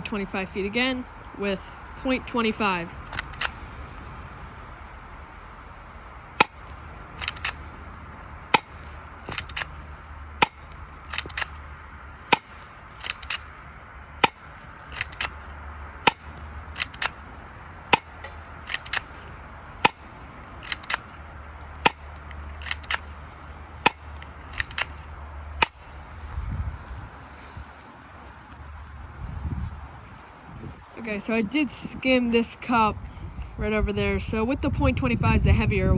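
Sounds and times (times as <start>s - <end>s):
airsoft pistol shots: 6.4s - 7.6s, 8.5s - 9.7s, 10.4s - 11.6s.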